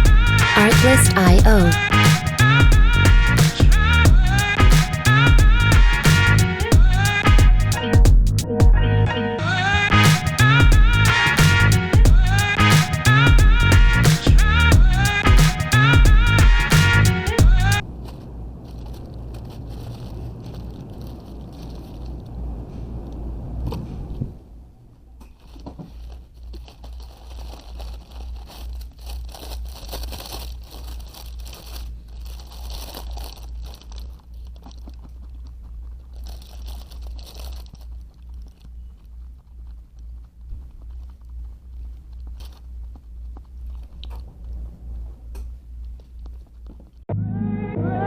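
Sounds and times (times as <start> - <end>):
engine running with low pulsing: 1.8 - 9.1, 11.9 - 12.6.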